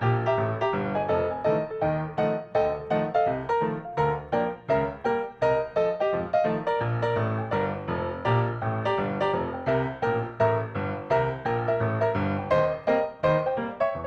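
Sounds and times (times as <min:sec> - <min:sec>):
piano music: 0:00.0 - 0:14.0.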